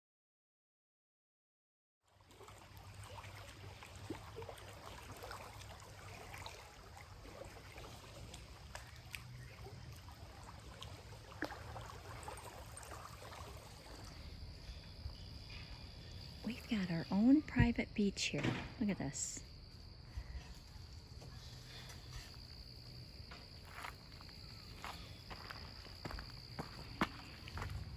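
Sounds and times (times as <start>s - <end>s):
small water splashes: 2.1s - 17.3s
water lapping on shore: 2.1s - 17.8s.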